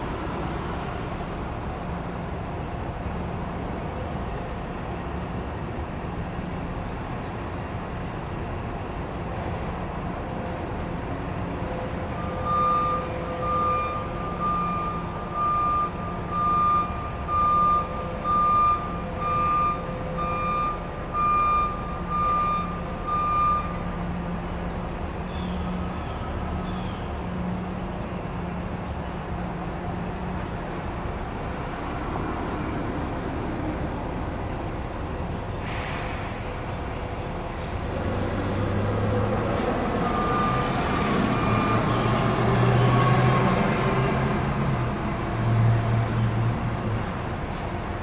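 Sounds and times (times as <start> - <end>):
truck engine rumbling: 0.0 - 48.0
reversing alarm beeping: 12.1 - 24.0, 39.8 - 42.2.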